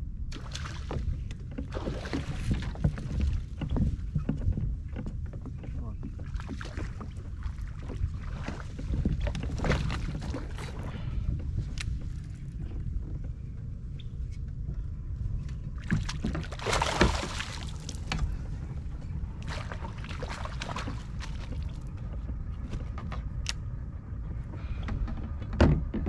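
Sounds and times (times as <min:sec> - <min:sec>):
low rumble of wind: 0:00.0 - 0:26.0
water around a kayak: 0:00.0 - 0:26.0
splashy rushes: 0:16.0 - 0:18.1, 0:19.4 - 0:21.6.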